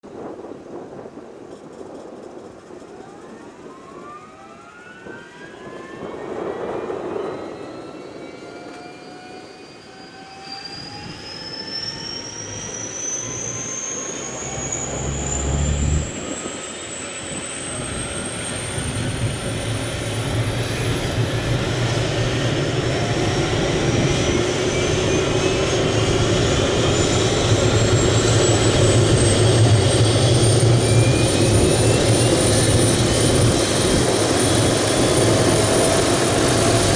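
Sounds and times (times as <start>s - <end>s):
low helicopter rotor beat: 0.1s - 36.9s
helicopter engine whine rising: 2.0s - 36.9s.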